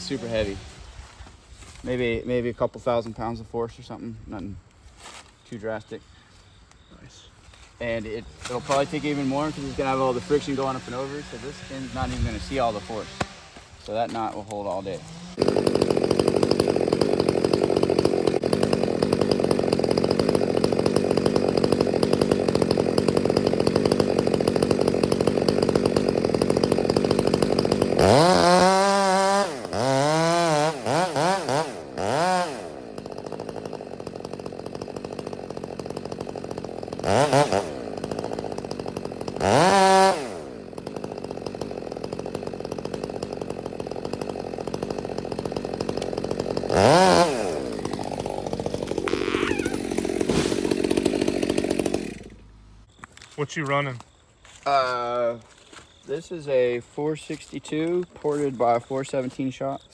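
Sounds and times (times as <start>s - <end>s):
chainsaw revving: 0.0s - 2.2s, 7.8s - 52.9s.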